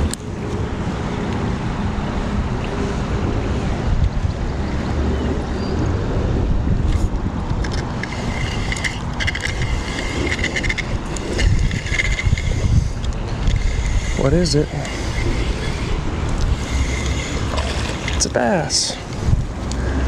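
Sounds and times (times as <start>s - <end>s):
wind buffeting microphone: 0.0s - 20.0s
rapid fine ticking: 7.6s - 20.0s.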